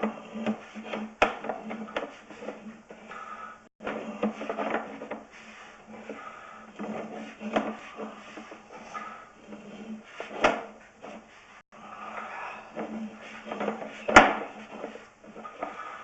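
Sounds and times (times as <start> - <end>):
inspection gear scraping and knocking: 0.0 - 5.3, 12.7 - 16.0.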